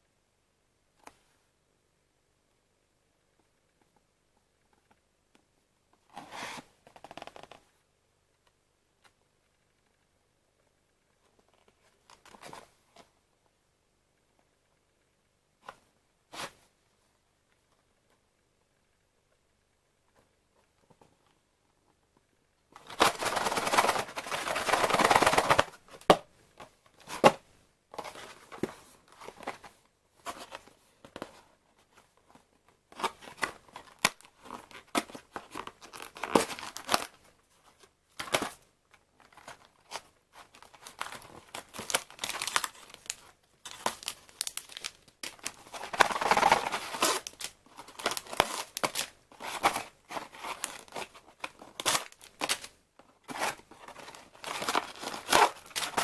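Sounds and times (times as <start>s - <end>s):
cardboard packaging tearing: 40.6s - 52.7s.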